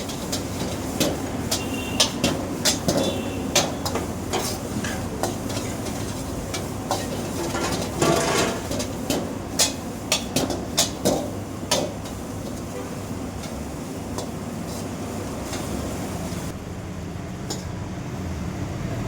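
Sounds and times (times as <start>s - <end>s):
metal utensil clinking on pot: 0.0s - 12.2s.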